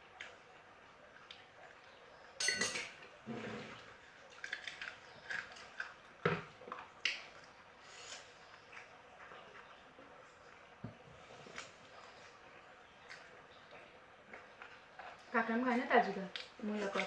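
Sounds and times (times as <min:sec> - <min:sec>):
dishes and cutlery clinking: 0:02.4 - 0:03.7.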